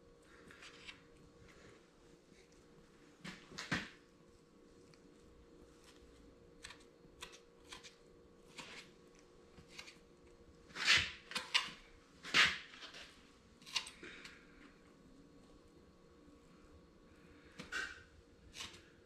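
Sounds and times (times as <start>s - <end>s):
hands and tools scraping hide: 10.7s - 13.0s.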